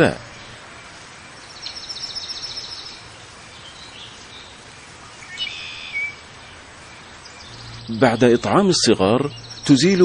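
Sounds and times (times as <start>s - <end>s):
small songbirds chirping: 0.0s - 10.0s
steady outdoor hiss: 0.0s - 10.0s.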